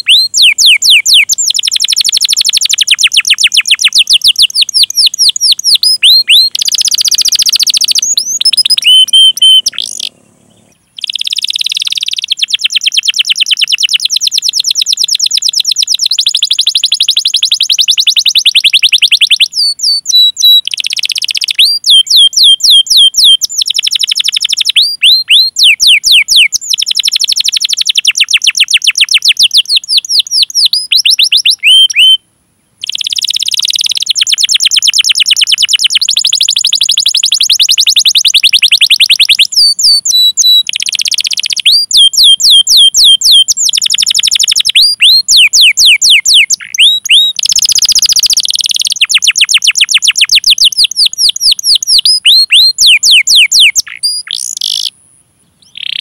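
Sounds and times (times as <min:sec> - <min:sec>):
canary singing: 0:00.0 - 0:32.2, 0:32.8 - 0:56.0.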